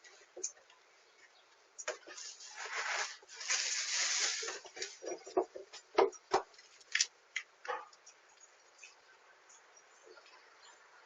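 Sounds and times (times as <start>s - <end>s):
rustling and scraping: 1.8s - 7.1s.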